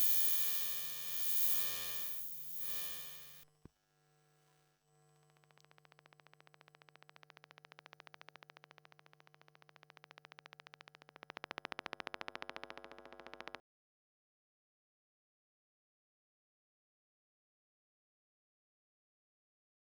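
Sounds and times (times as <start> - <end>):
rapid electrical pulsing: 0.0 - 3.4
click: 10.0 - 13.6.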